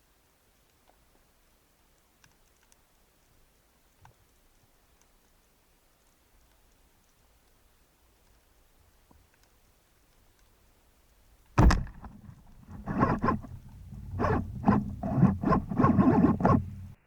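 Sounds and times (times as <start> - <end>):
knocks and rattles: 11.6 - 17.0
spear gun firing thunk: 11.6 - 17.0.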